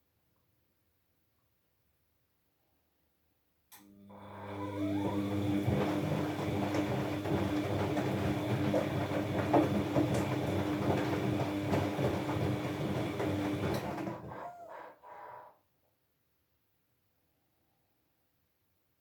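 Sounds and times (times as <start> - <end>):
washing machine drum squealing: 14.2 - 14.9.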